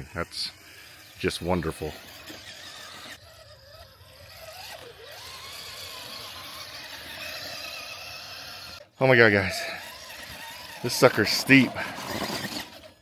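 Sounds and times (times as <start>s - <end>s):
electric motor whining: 0.0s - 13.0s.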